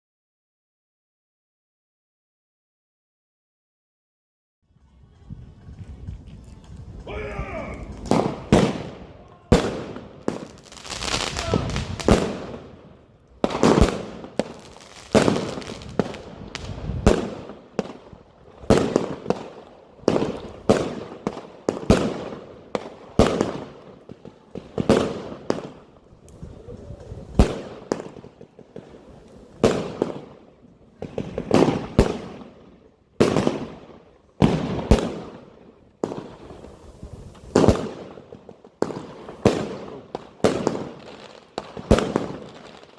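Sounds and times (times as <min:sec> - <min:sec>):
firework cake bangs: 0:07.0 - 0:12.8, 0:13.5 - 0:18.0.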